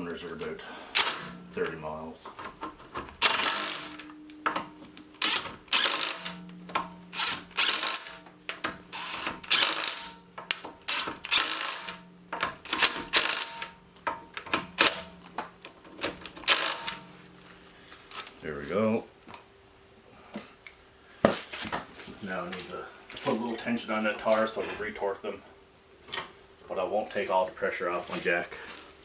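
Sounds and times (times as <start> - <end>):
power tool rattling on lug nuts: 0.9 - 1.7, 2.3 - 17.1.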